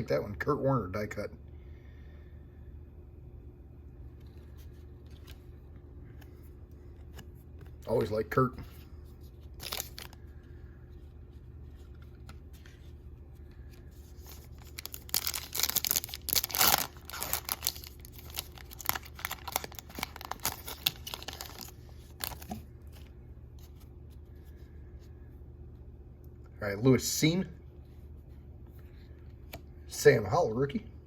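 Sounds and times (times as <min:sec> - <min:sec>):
wrapper tearing and crinkling: 0:09.5 - 0:10.2, 0:14.1 - 0:22.6
cards clicking and rustling: 0:14.1 - 0:23.1.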